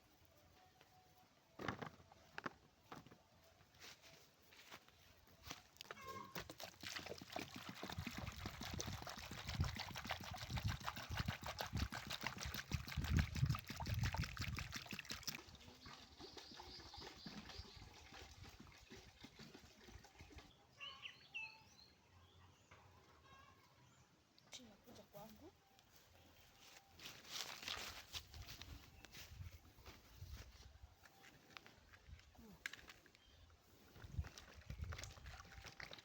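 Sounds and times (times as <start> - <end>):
water pouring and splashing: 6.2 - 20.6, 34.0 - 36.0.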